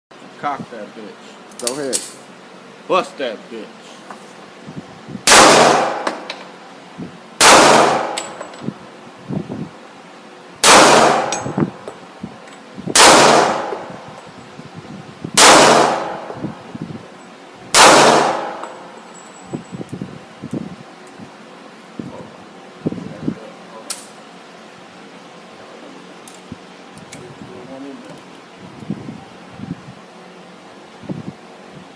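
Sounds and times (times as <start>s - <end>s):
gunshots with ringing echo: 5.3s - 6.2s, 7.4s - 8.4s, 10.6s - 11.6s, 13.0s - 14.0s, 15.4s - 16.4s, 17.8s - 18.9s.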